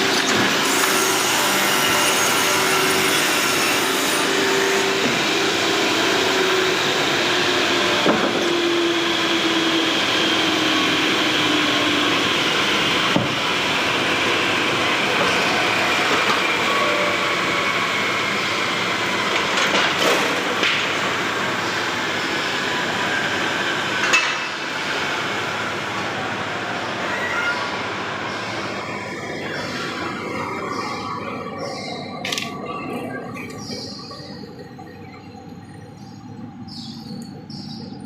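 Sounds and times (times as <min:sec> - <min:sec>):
power saw cutting wood: 0:00.2 - 0:05.4.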